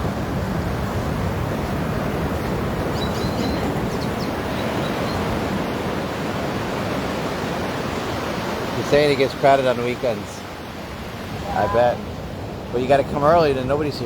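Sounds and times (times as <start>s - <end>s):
surf on sandy beach: 0.0s - 14.0s.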